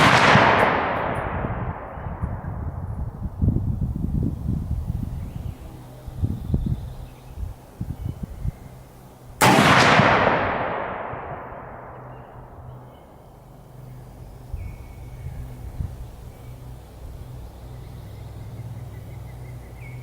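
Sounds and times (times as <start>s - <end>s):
rifle shot with echo: 0.0s - 2.4s, 9.4s - 12.5s.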